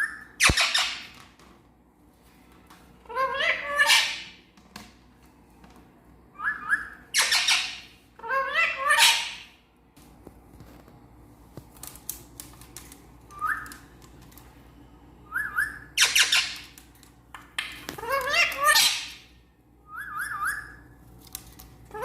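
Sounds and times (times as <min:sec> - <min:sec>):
parrot screeching: 0:00.0 - 0:01.1, 0:03.1 - 0:04.4, 0:06.4 - 0:09.6, 0:15.3 - 0:16.6, 0:18.0 - 0:19.2
parrot whistling: 0:06.4 - 0:09.5, 0:15.2 - 0:16.6, 0:19.8 - 0:20.8.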